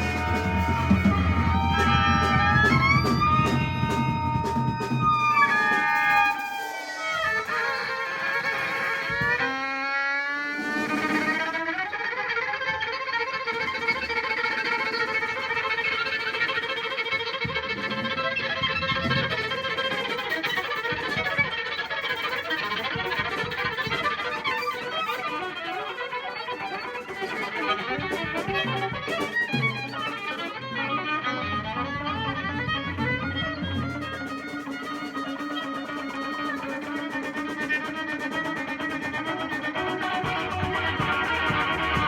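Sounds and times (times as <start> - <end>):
violin-like lead line: 0.0 - 13.1, 24.9 - 42.0
live band playing: 0.0 - 42.0.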